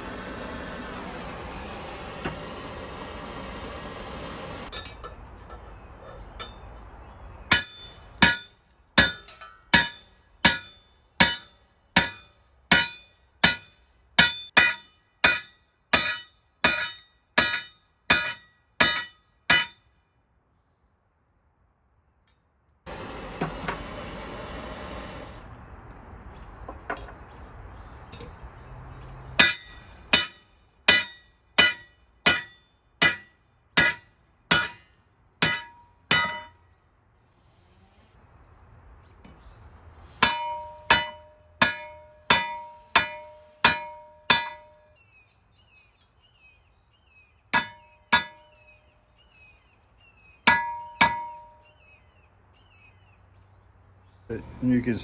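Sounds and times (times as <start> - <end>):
rushing noise: 0.0 - 4.7
metal ringing: 7.5 - 19.9, 29.4 - 36.6, 40.2 - 45.0, 47.6 - 48.8, 50.5 - 51.8.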